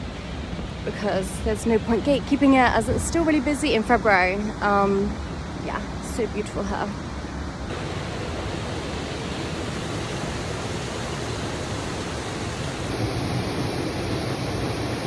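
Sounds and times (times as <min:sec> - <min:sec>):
waterfall rushing: 0:07.7 - 0:15.0.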